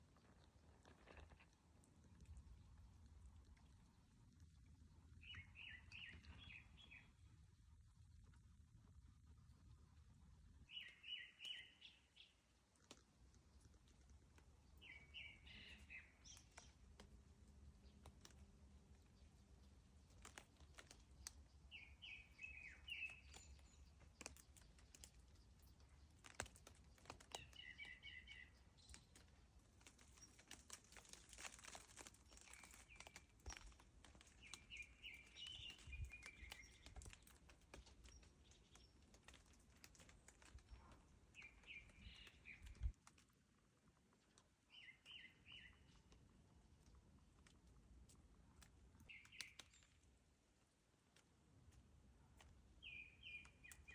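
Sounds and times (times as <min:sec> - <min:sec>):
bird chirping: 0:05.1 - 0:07.3, 0:10.6 - 0:12.9, 0:14.6 - 0:17.0, 0:17.7 - 0:43.0, 0:44.7 - 0:46.1, 0:48.9 - 0:50.0, 0:52.4 - 0:53.9.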